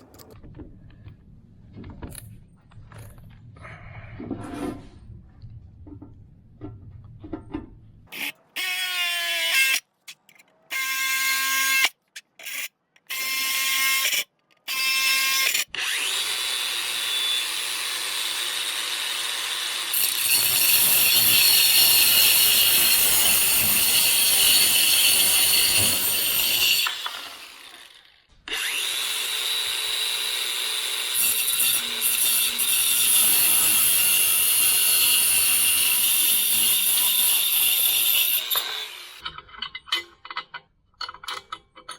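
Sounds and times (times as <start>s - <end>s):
electric drill drilling metal: 10.7s - 39.2s.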